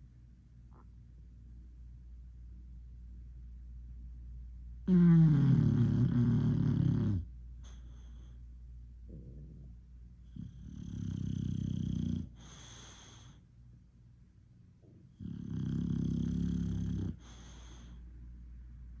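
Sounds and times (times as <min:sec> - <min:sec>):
dog snoring: 0:04.8 - 0:08.3, 0:09.1 - 0:13.4, 0:15.1 - 0:18.0
dog wheezy breath: 0:12.4 - 0:13.4, 0:17.1 - 0:18.0.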